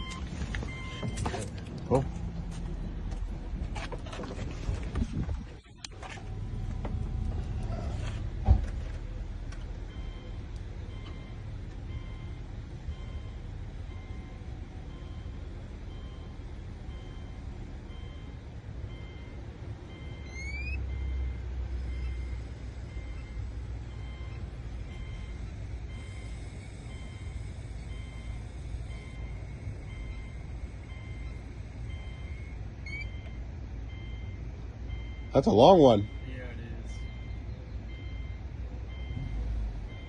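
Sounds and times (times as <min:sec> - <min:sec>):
car engine idling: 0:00.0 - 0:40.0
repeated electronic beep: 0:16.9 - 0:40.0
short rising chirp: 0:20.0 - 0:21.0.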